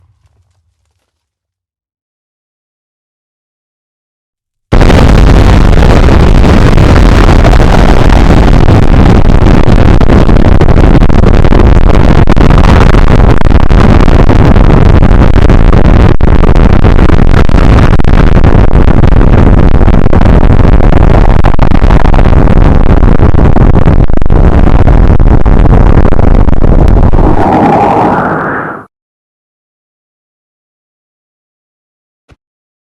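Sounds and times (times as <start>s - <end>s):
distorted explosion roar: 4.7s - 28.9s
short rising whine: 26.8s - 28.9s.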